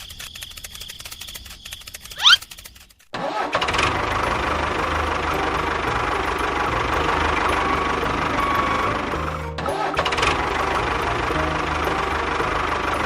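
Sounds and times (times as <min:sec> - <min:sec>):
small engine running: 0:03.2 - 0:13.0
rising whistle-like sweep: 0:06.6 - 0:09.4.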